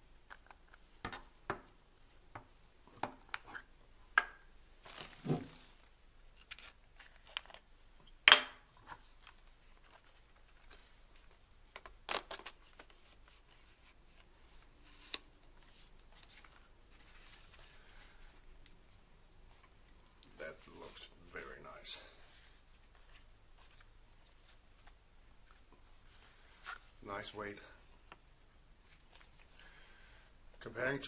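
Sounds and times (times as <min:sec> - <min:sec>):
packaging rustle: 0:04.8 - 0:07.6.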